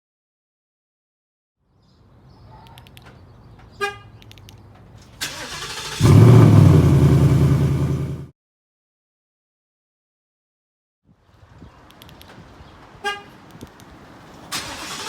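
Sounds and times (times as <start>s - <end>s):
engine cranking: 5.0s - 8.3s, 14.5s - 15.0s
car engine running loudly: 5.8s - 8.3s.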